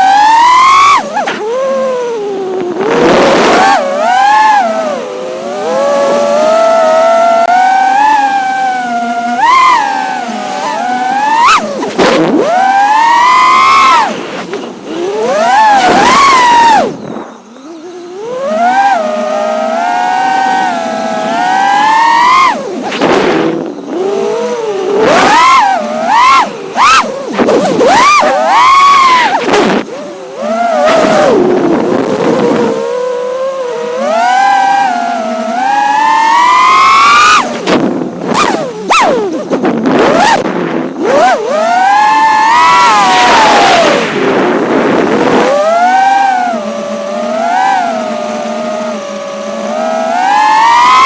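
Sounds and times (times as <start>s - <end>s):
drone motors whining: 0.0s - 51.0s.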